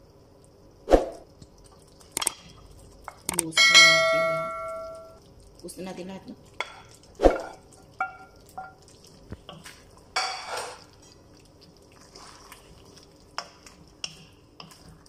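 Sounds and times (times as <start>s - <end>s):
metal spoon scraping a pan: 9.5s - 11.2s.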